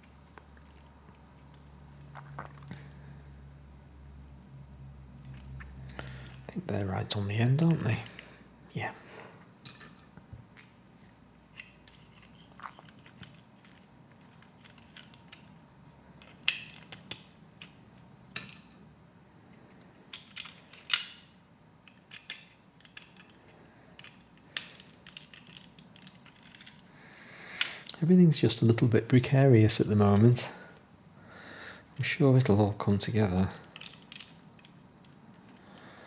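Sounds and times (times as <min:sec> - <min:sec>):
plastic pieces clicking: 0:16.2 - 0:17.8, 0:20.1 - 0:21.2, 0:21.8 - 0:23.4, 0:24.0 - 0:26.9, 0:33.6 - 0:35.9.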